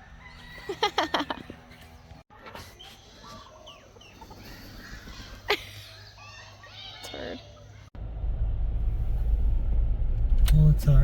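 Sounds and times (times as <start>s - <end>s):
chickens clucking: 0.3s - 7.7s.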